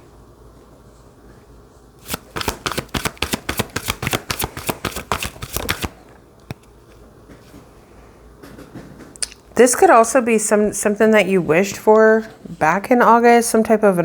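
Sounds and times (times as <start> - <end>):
cards being shuffled: 2.0 - 6.7.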